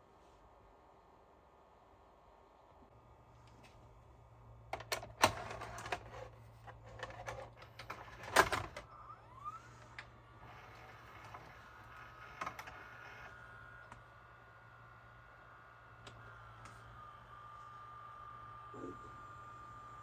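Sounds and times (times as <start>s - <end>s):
constant low hum: 0.0s - 20.0s
recorder mechanism clicking and clunking: 4.7s - 8.9s
steady whir: 7.0s - 20.0s.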